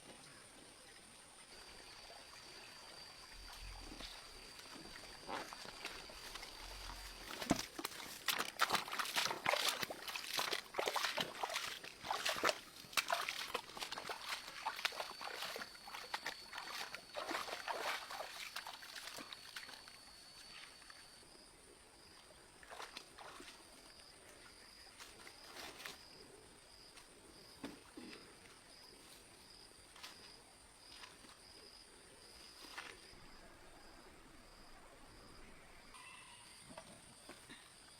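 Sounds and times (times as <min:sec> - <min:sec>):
water splashing and sloshing: 0:01.4 - 0:20.9, 0:22.0 - 0:26.2.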